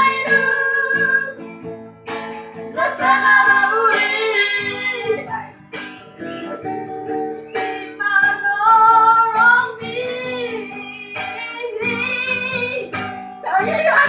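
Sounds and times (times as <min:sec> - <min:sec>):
acoustic guitar: 0:00.0 - 0:14.0
child singing: 0:13.5 - 0:14.0.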